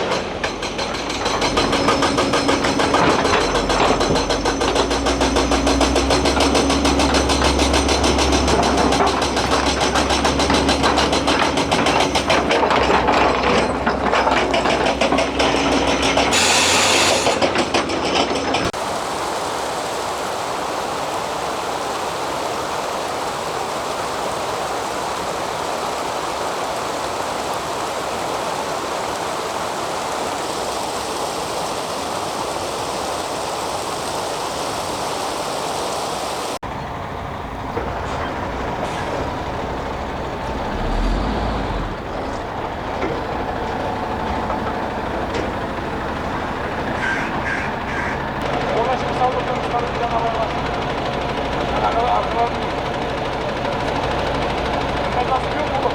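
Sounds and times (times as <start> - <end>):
excavator diesel engine rattling: 0.0 - 18.8, 36.6 - 55.9
steady rushing noise: 18.7 - 36.6.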